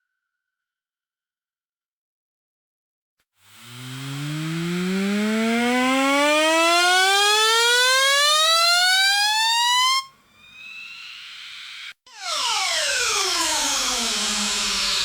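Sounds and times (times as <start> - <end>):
electric razor buzzing: 3.5 - 6.4.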